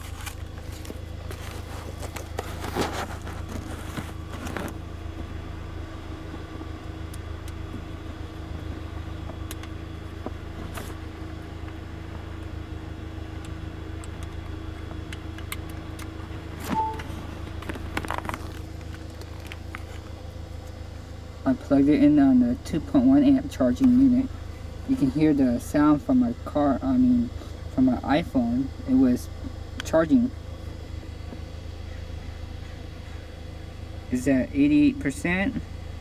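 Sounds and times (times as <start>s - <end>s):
handling clicks and rustles: 0.0s - 5.3s, 13.3s - 21.2s
car engine idling: 0.0s - 36.0s.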